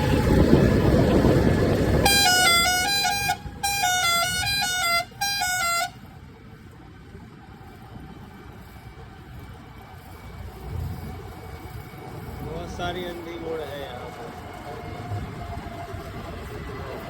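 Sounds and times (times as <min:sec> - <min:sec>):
musical vehicle horn tune: 0:00.0 - 0:01.1, 0:01.9 - 0:06.1
engine and road noise: 0:00.0 - 0:17.0.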